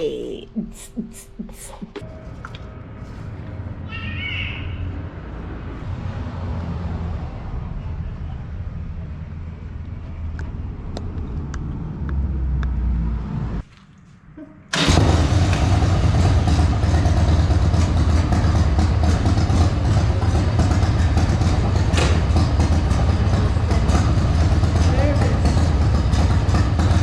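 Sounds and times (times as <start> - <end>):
motorcycle engine running: 14.7 - 27.0.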